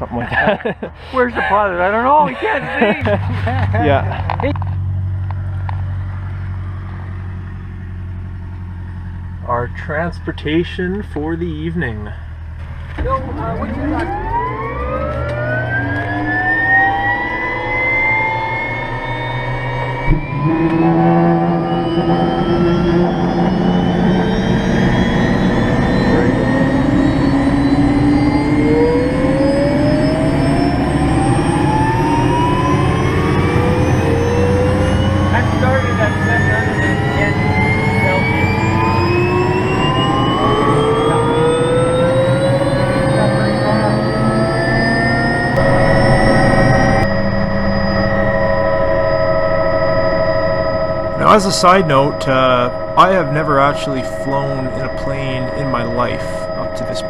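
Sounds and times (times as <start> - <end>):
steady low hum: 0.0 - 57.0
helicopter turbine whine: 13.1 - 57.0.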